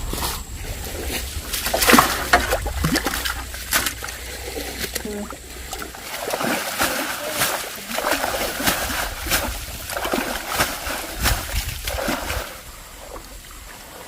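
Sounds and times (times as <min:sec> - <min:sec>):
pond water splashing: 0:00.0 - 0:14.0.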